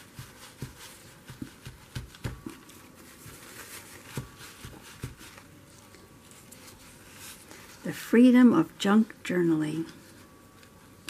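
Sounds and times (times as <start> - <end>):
faint paper rustling: 0.0 - 8.1.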